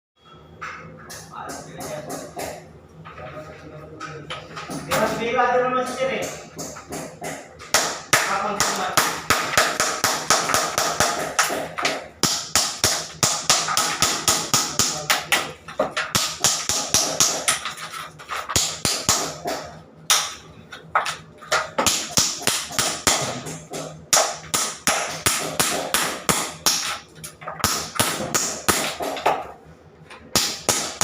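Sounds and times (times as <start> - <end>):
rapid sharp taps: 5.8 - 20.4.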